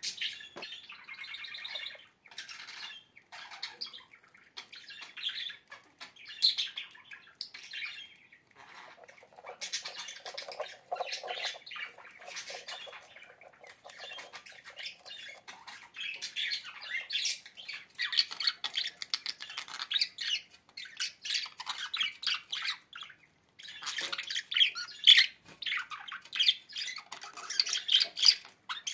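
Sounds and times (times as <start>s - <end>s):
bird squawking and chirping: 8.6s - 19.7s.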